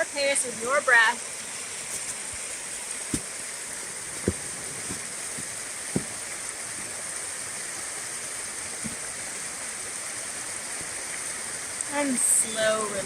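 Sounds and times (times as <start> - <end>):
low thumps: 4.1 - 6.2.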